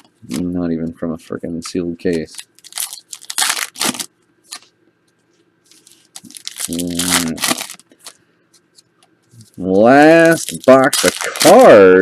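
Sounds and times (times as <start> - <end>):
plastic wrapping crinkling and tearing: 2.1 - 4.7, 5.7 - 8.2, 9.9 - 12.0.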